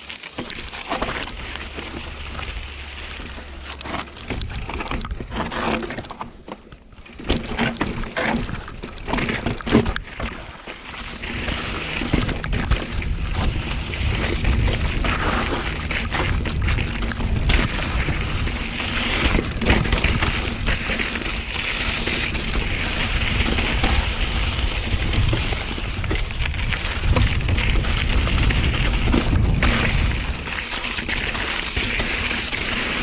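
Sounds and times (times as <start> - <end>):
bike rattling over bumps: 0.0 - 33.0
tyres crunching on gravel: 0.0 - 33.0
wind on microphone: 11.3 - 33.0.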